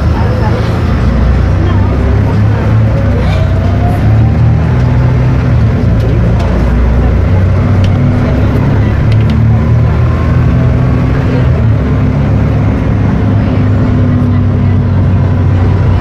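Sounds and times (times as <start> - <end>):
bus diesel engine running: 0.0 - 16.0.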